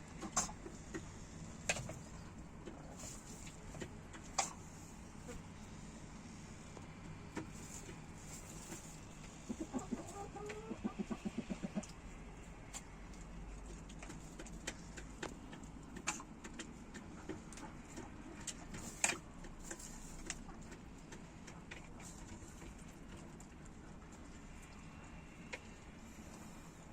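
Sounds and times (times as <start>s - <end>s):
chicken clucking: 7.6s - 12.0s.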